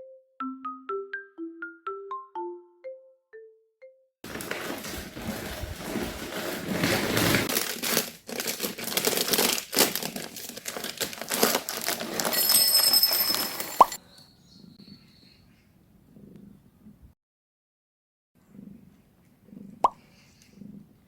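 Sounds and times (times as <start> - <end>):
crinkling and rustling: 4.2 - 14.0.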